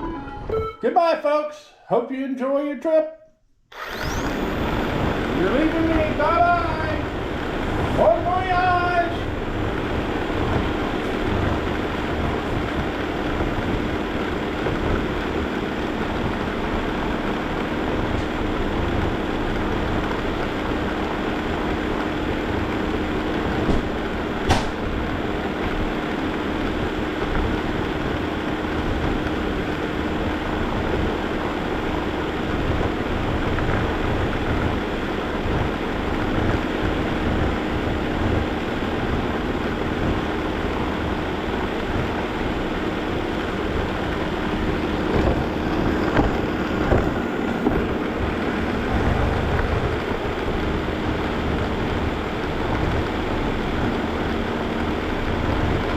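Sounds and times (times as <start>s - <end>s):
robot vacuum motor hum: 3.7s - 6.2s
sharp knocks: 23.6s - 25.0s.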